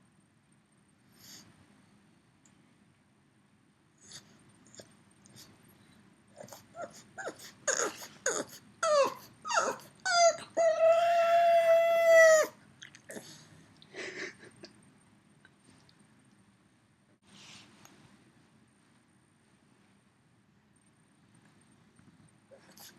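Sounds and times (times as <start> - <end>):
dog whining and howling: 6.4 - 12.6.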